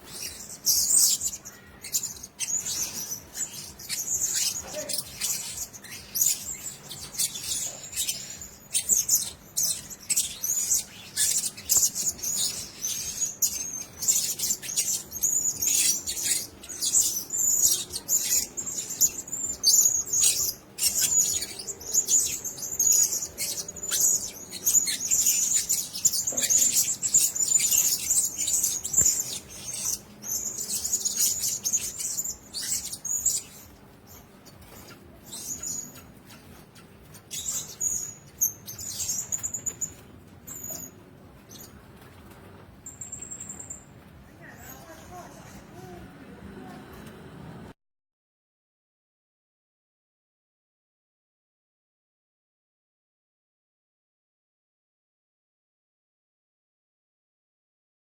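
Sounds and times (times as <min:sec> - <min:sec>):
parrots chirping: 0:00.0 - 0:45.6.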